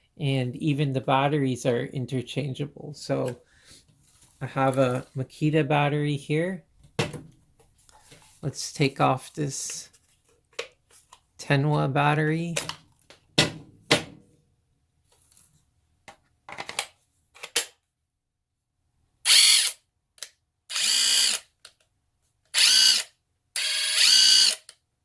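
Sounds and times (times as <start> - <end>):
impact wrench motor whine: 20.7 - 21.4, 22.6 - 24.7.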